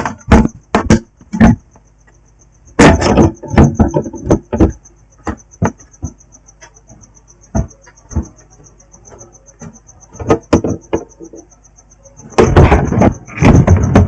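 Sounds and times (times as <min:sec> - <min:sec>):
rapid high-pitched pulsing: 0:01.6 - 0:14.0.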